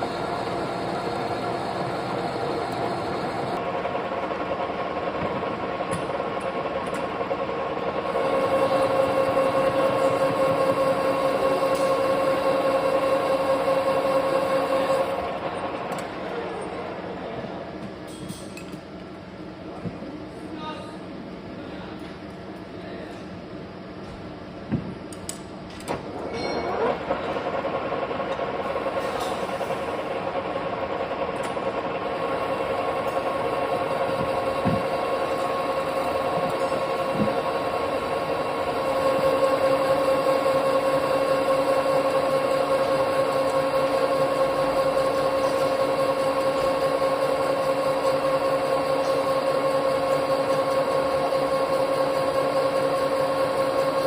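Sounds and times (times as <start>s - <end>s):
metal lathe whining: 0.0s - 4.8s, 6.2s - 16.1s, 26.2s - 54.0s.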